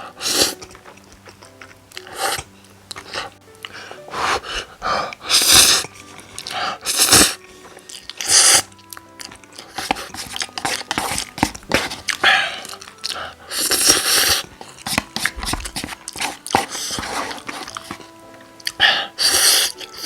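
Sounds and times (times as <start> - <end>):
noodle slurping: 0.0 - 20.0
chewing with wet mouth clicks: 7.9 - 17.9.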